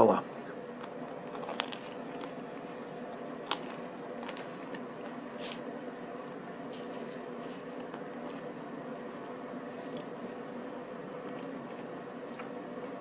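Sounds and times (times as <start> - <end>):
person chewing food: 0.4 - 13.0.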